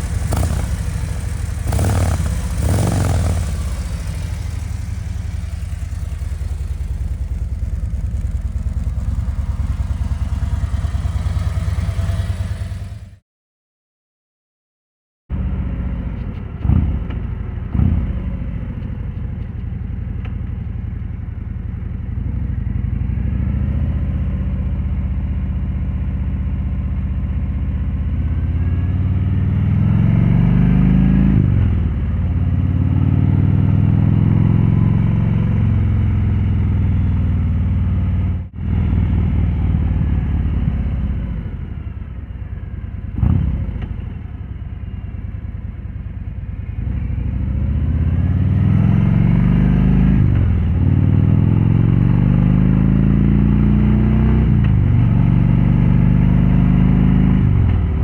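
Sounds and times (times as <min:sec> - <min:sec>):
motorcycle engine revving: 0:00.0 - 0:13.2, 0:15.4 - 0:18.8, 0:28.3 - 0:58.0.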